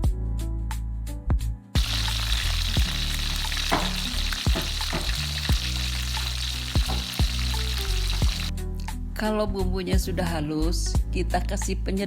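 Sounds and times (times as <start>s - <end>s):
soft background music with beat: 0.0s - 12.0s
fish sizzling in hot oil: 1.8s - 8.5s.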